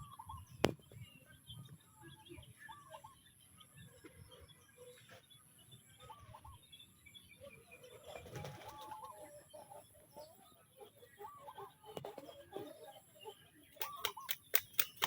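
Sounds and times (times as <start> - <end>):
chickens clucking: 8.1 - 15.0.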